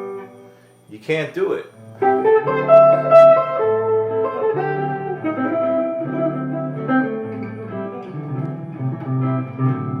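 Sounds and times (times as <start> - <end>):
clean electric guitar arpeggio: 1.7 - 10.0.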